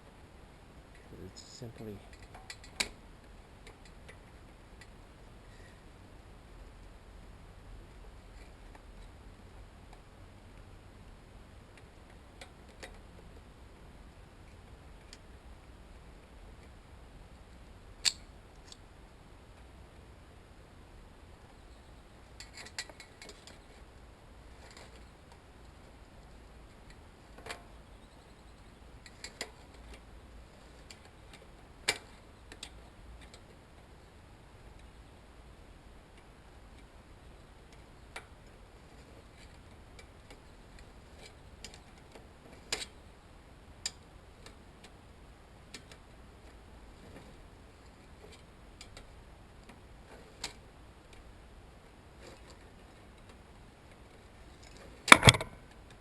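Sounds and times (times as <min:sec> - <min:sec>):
metallic clicks of hand tools: 0:18.0 - 0:18.8.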